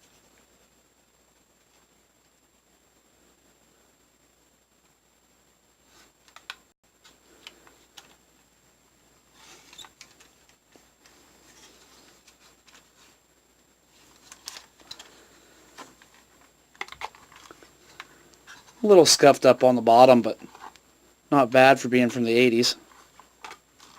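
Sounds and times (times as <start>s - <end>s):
plastic toy clicks and rustles: 14.2s - 15.2s, 15.8s - 18.6s, 22.9s - 23.9s.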